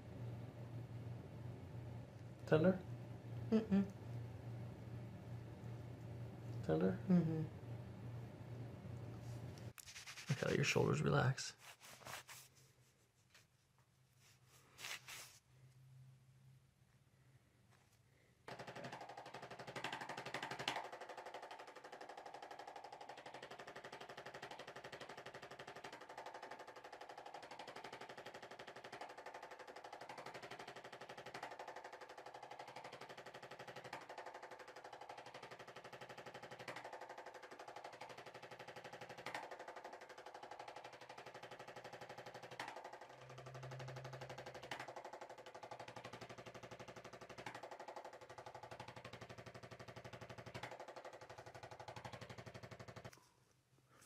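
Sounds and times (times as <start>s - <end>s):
rapid mechanical hammering: 18.5s - 53.2s.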